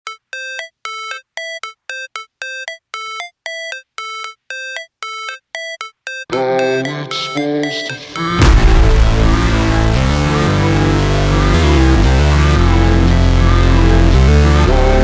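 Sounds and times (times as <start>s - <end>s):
electronic music riff: 0.0s - 15.0s
deep bass: 8.4s - 15.0s.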